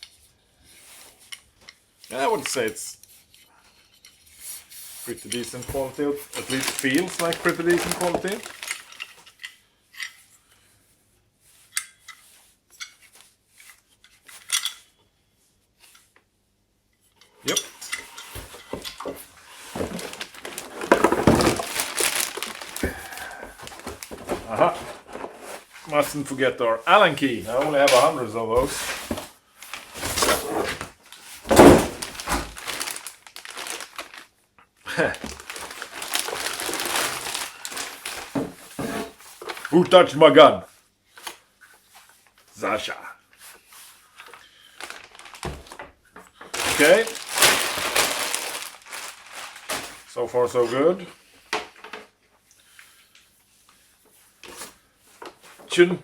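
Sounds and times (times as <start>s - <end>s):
packaging rustling and crinkling: 5.0s - 9.4s, 18.1s - 39.8s, 43.5s - 50.6s.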